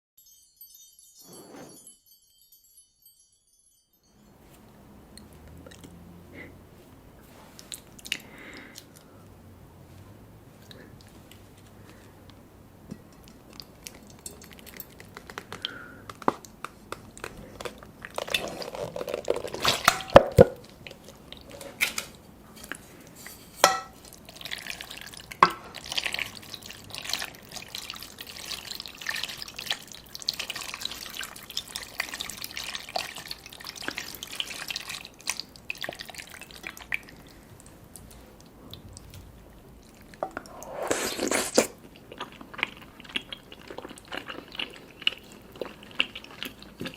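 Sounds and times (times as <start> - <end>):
slurping through a straw: 40.2 - 41.8.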